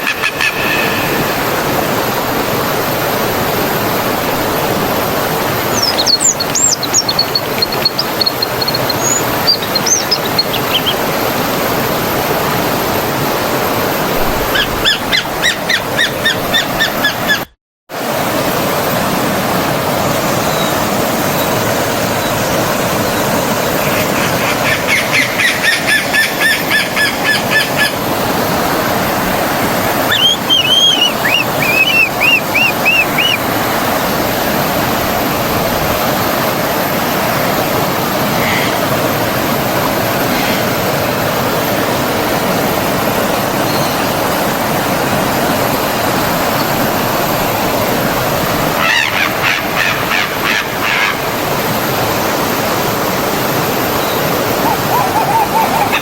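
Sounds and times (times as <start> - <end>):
songbirds calling: 0.0 - 1.6, 5.3 - 11.8, 14.4 - 17.5, 20.4 - 28.1, 29.9 - 34.1, 38.2 - 39.2, 53.7 - 56.0
stream running: 0.0 - 56.0.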